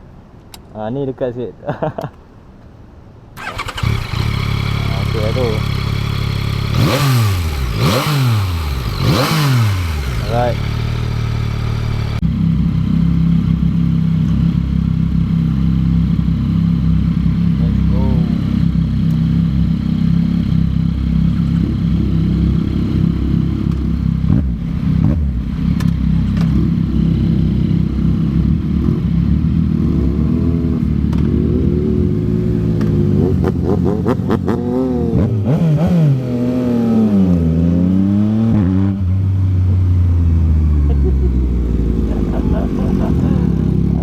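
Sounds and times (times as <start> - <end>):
exhaust cracks: 3.4 - 12.2
motorcycle engine revving: 3.4 - 44.0.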